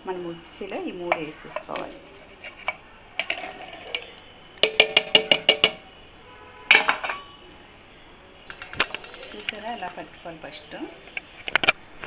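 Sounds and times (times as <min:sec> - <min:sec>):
steel kitchenware clinking: 0:06.7 - 0:07.4.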